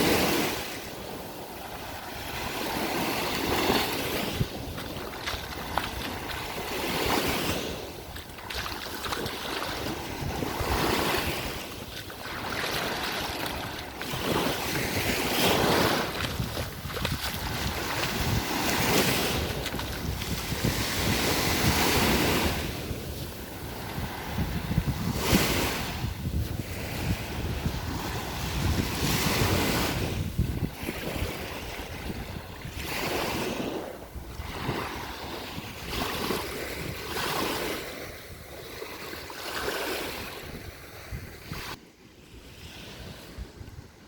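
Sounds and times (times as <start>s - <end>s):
wind buffeting microphone: 0.0s - 41.8s, 42.4s - 44.0s
sea waves on beach: 0.0s - 44.0s.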